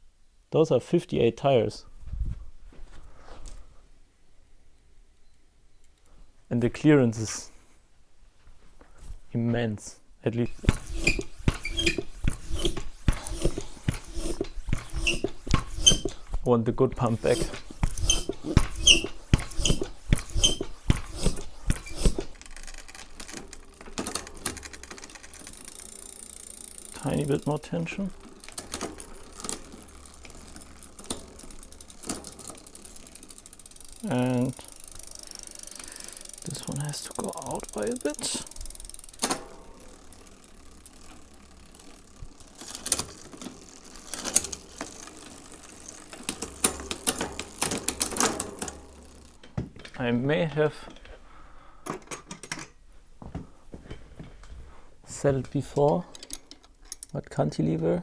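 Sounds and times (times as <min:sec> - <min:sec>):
hand pump strokes: 0:10.4 - 0:49.5.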